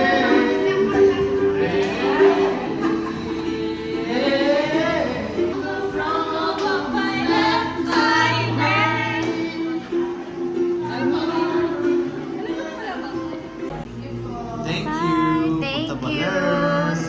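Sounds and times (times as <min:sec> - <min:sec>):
background music: 0:00.0 - 0:17.0
voices singing: 0:00.0 - 0:17.0.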